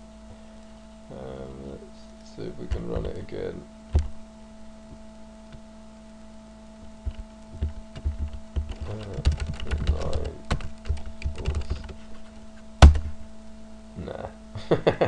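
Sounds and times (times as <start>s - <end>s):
electrical hum: 0.0s - 15.0s
keyboard typing: 6.8s - 12.0s.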